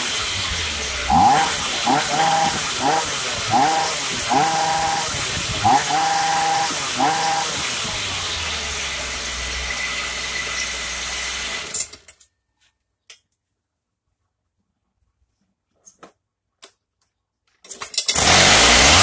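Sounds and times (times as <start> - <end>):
concrete cutter engine running: 0.0 - 12.0, 18.1 - 19.0.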